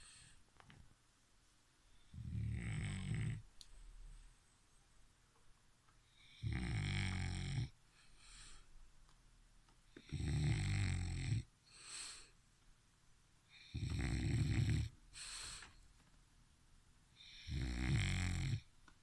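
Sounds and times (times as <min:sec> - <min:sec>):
soft hissing breath: 0:00.0 - 0:00.5, 0:07.8 - 0:08.8, 0:11.6 - 0:12.4, 0:15.1 - 0:15.9
dog snoring: 0:02.1 - 0:03.5, 0:06.2 - 0:08.6, 0:10.0 - 0:12.2, 0:13.5 - 0:15.6, 0:17.2 - 0:18.7.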